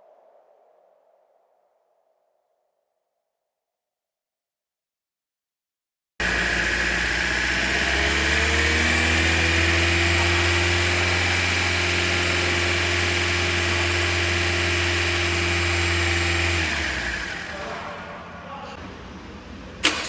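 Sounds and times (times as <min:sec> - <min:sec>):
car engine running: 0:06.2 - 0:18.2.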